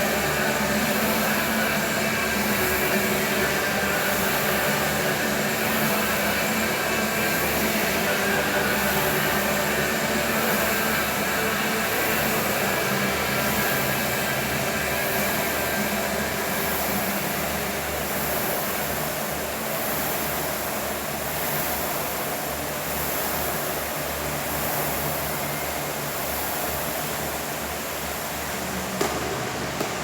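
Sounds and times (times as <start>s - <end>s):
rowing machine flywheel whirring: 0.0s - 30.0s
sharp knock: 29.0s - 30.0s.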